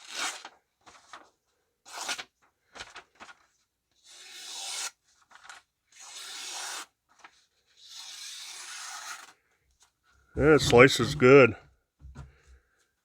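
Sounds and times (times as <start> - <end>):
paper rustling: 0.4 - 1.4, 2.7 - 3.5, 5.2 - 5.6.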